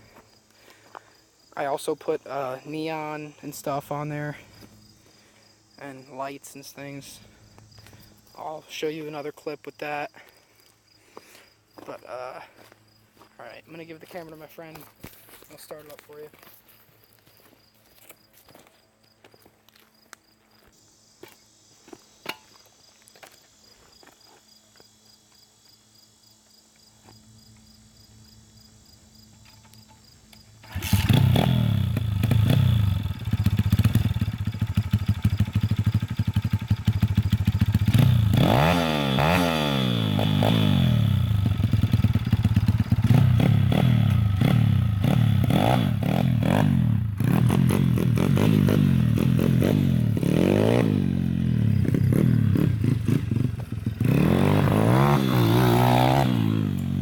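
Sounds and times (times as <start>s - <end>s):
motorcycle engine revving: 30.6s - 57.0s.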